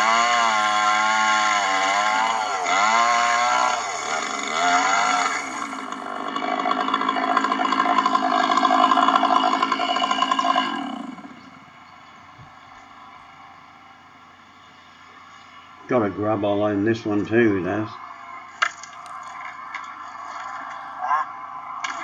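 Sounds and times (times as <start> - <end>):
chainsaw cutting through log: 0.0 - 11.8.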